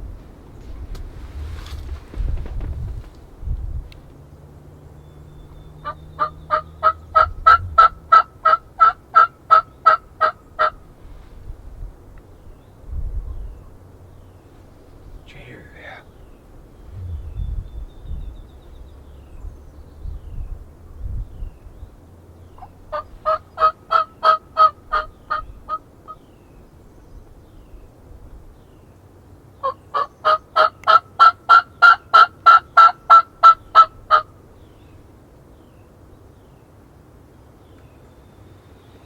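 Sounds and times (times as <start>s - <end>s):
turkey call yelps: 5.8s - 10.8s, 22.9s - 26.2s, 29.6s - 34.3s.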